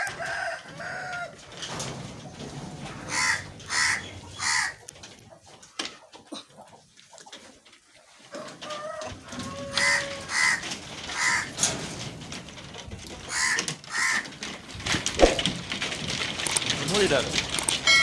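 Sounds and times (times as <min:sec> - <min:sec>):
crows cawing: 0:03.1 - 0:04.8, 0:09.8 - 0:10.6, 0:11.2 - 0:11.5, 0:13.3 - 0:14.2.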